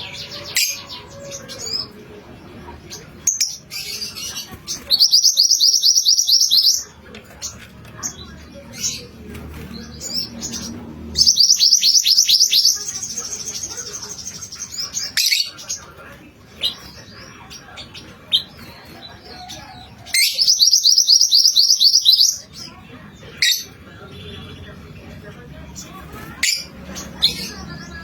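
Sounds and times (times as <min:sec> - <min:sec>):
bird chirps: 0:04.8 - 0:06.9, 0:10.0 - 0:15.6, 0:20.2 - 0:22.4.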